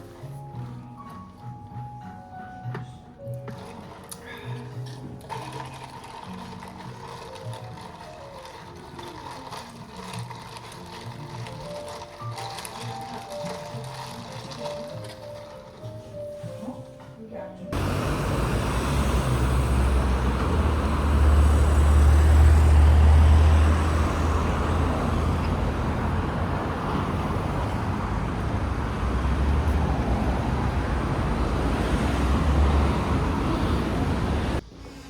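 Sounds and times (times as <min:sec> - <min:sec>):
vehicle road noise: 0:17.7 - 0:34.6.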